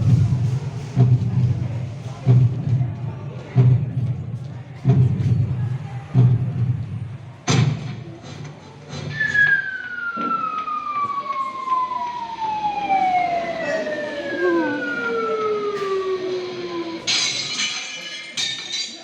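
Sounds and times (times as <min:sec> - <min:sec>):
falling whistle tone: 0:09.1 - 0:17.4.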